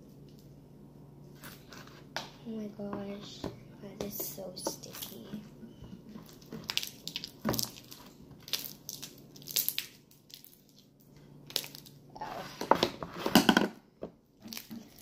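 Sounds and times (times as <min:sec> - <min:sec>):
slime squelching and popping: 0:06.1 - 0:12.0, 0:14.4 - 0:15.0.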